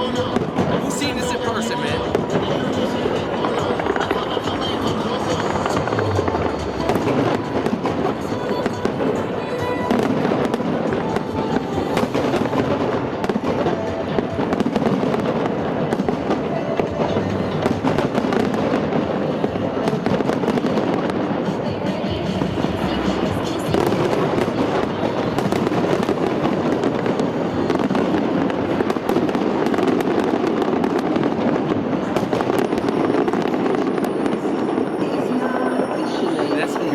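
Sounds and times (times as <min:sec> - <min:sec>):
fireworks bangs and crackles: 0:00.0 - 0:36.9
music soundtrack: 0:00.8 - 0:14.5.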